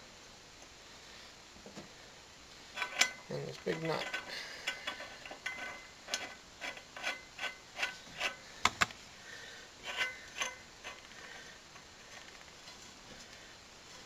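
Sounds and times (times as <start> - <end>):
nut spinning on threaded shaft: 2.7 - 8.8, 9.8 - 11.2.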